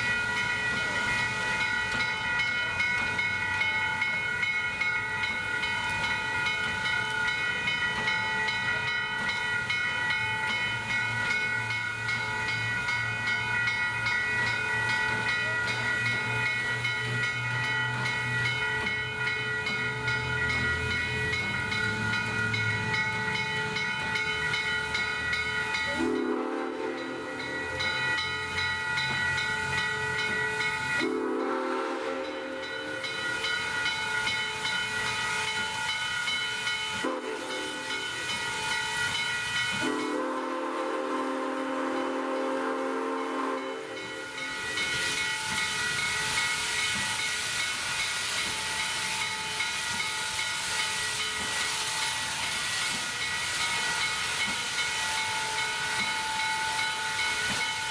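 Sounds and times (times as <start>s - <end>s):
steam hissing: 19.8s - 57.9s
steam whistle blasts: 25.9s - 27.4s, 31.0s - 32.7s, 37.0s - 37.9s, 39.8s - 44.2s.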